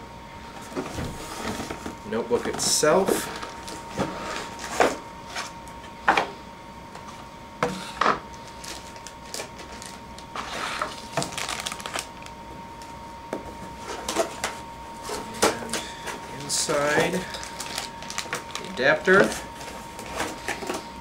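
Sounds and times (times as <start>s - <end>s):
faint steady whine: 0.0s - 21.0s
cardboard rustling: 8.4s - 12.3s, 13.7s - 20.8s.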